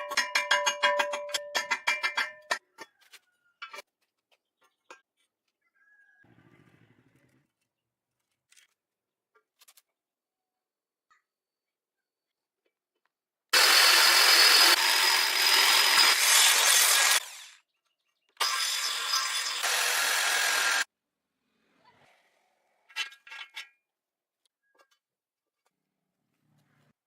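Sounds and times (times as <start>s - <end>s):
angle grinder cutting steel: 13.6s - 17.6s, 18.4s - 20.9s.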